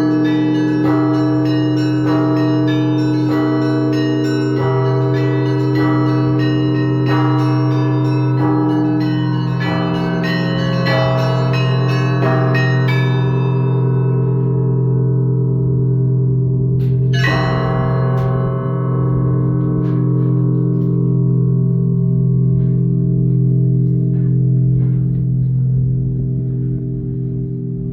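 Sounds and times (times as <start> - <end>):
large bells humming: 0.0 - 27.9.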